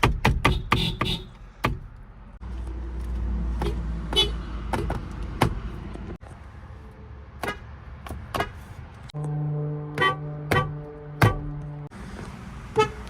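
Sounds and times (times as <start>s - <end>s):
car horn beeping: 0.5s - 1.4s, 3.6s - 4.4s, 9.2s - 11.9s, 12.7s - 13.0s.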